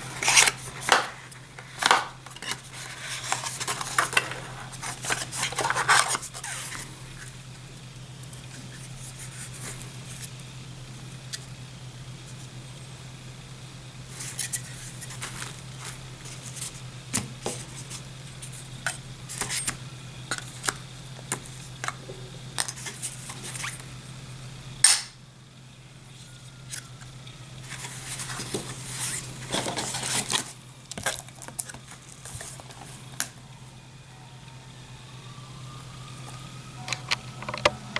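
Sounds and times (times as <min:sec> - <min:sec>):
plastic items clicking and clattering: 0:00.0 - 0:06.8, 0:29.4 - 0:33.3
rustling: 0:14.1 - 0:16.8.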